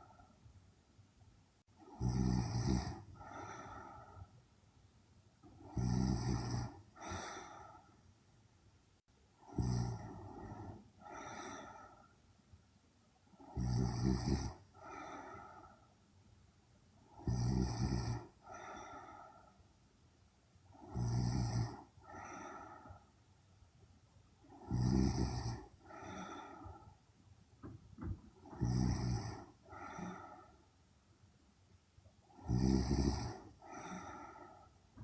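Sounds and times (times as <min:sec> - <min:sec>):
woman snoring: 0:01.8 - 0:04.3, 0:05.4 - 0:07.9, 0:09.4 - 0:12.1, 0:13.3 - 0:15.8, 0:17.1 - 0:19.4, 0:20.7 - 0:23.0, 0:24.4 - 0:26.9, 0:28.3 - 0:30.6, 0:32.2 - 0:35.0.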